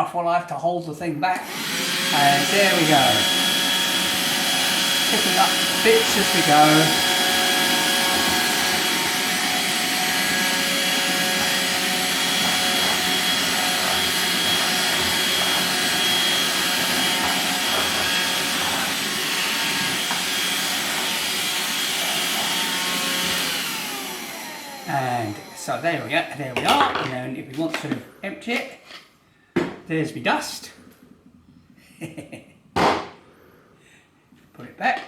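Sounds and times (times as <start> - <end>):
handheld vacuum cleaner running: 1.4 - 26.9.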